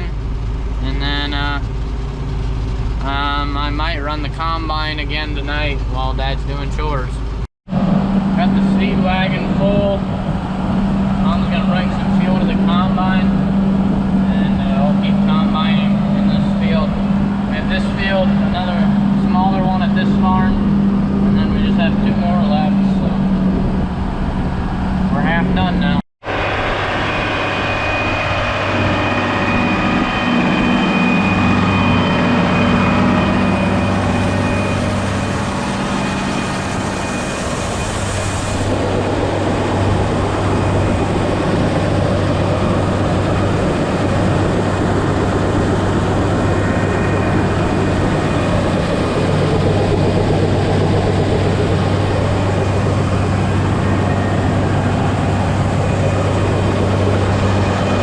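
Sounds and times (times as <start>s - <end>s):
combine harvester engine hum: 0.0s - 58.0s
thin high whine: 7.8s - 58.0s.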